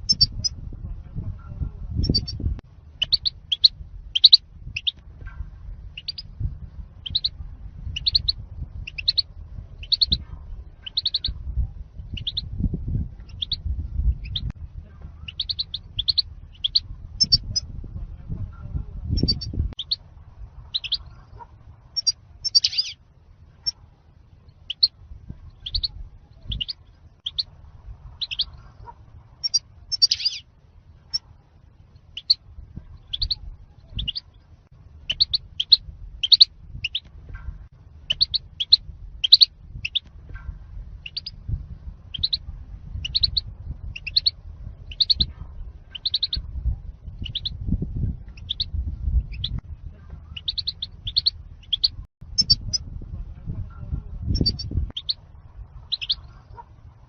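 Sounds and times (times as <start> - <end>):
bird chirping: 0.0 - 0.5, 2.0 - 5.0, 5.9 - 6.4, 7.0 - 11.4, 12.1 - 12.5, 13.2 - 14.5, 15.2 - 17.7, 19.1 - 20.0, 20.6 - 23.0, 24.4 - 27.5, 28.2 - 31.3, 31.9 - 37.1, 38.0 - 40.1, 41.0 - 41.4, 42.1 - 45.3, 45.9 - 46.5, 47.1 - 49.6, 50.2 - 52.8, 54.3 - 56.6
low rumble: 0.0 - 57.0.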